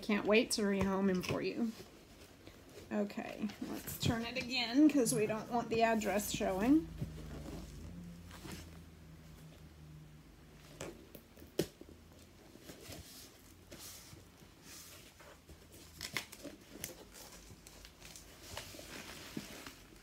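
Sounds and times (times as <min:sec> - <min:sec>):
packaging rustling and tearing: 0:15.6 - 0:20.0.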